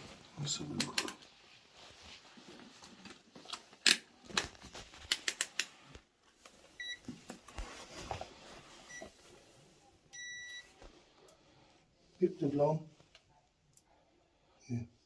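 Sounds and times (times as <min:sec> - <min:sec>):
test meter beep: 0:06.8 - 0:07.0, 0:10.1 - 0:10.7.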